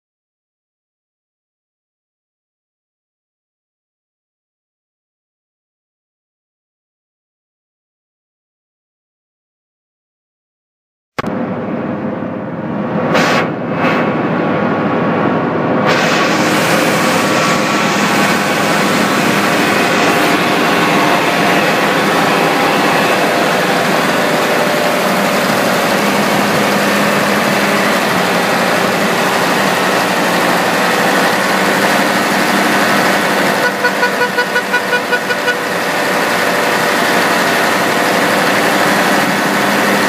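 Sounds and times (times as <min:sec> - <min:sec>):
machine drone with steady tones: 0:11.2 - 0:40.0
loud hiss: 0:15.9 - 0:33.6.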